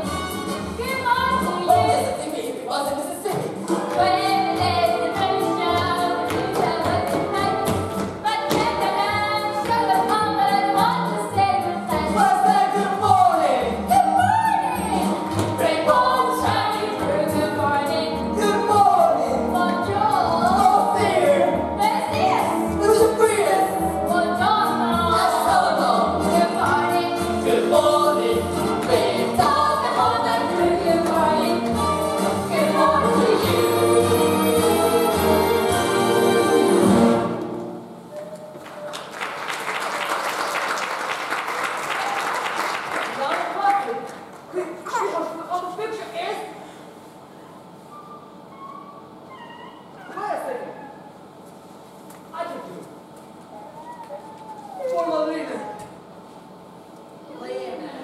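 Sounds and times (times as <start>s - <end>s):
voices singing together: 8.8s - 22.5s, 23.5s - 37.3s
chorus singing: 23.7s - 37.4s.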